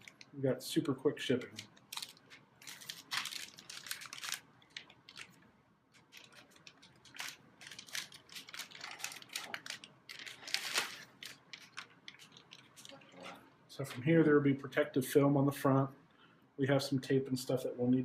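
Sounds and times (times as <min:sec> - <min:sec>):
plastic packaging crinkling: 0:00.0 - 0:00.4, 0:01.3 - 0:13.4.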